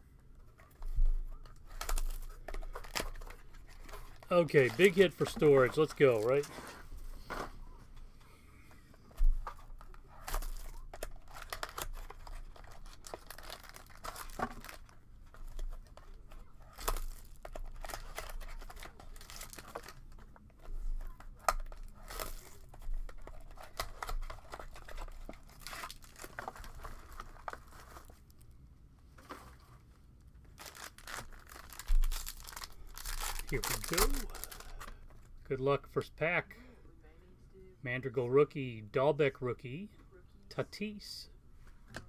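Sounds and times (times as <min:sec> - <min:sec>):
plastic wrapping tearing and crinkling: 0:00.8 - 0:06.5, 0:09.4 - 0:28.4, 0:30.4 - 0:35.0.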